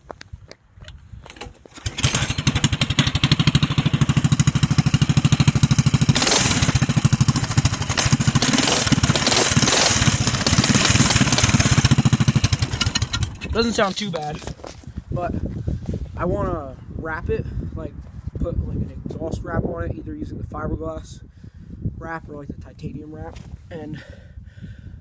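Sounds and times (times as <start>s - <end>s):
minibike engine running: 1.8s - 14.7s.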